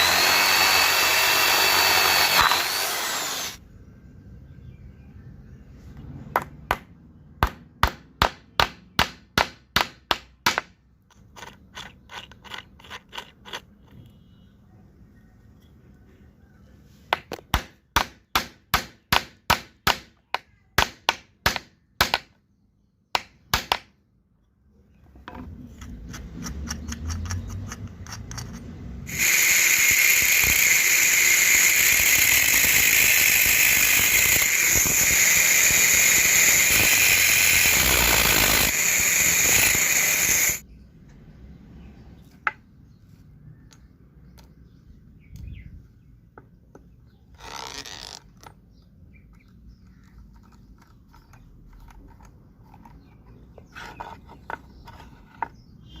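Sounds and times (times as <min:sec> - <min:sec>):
power tool running: 0:00.0 - 0:03.6, 0:29.1 - 0:40.6.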